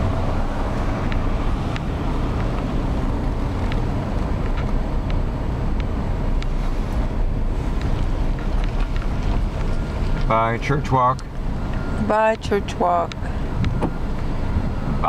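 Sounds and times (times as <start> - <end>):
car road and engine noise: 0.0 - 15.0.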